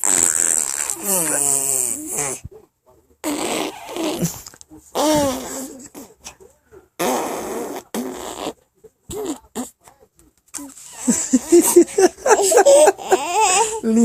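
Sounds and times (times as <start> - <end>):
raspberries blown through lips: 0.0 - 2.4.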